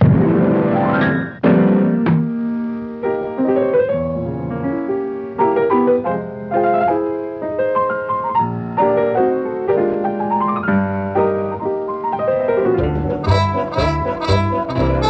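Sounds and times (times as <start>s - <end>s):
cartoon piano music: 12.1s - 15.0s.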